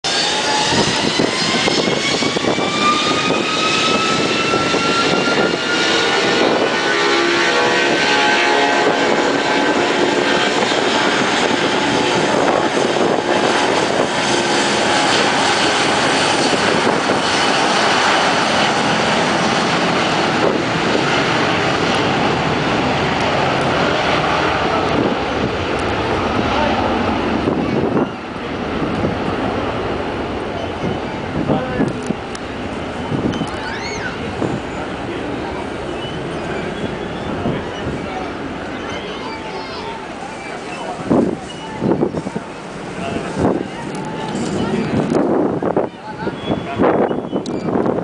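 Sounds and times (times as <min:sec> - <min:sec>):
jet engines whining: 0:00.0 - 0:48.0
jet noise rushing: 0:00.0 - 0:48.0.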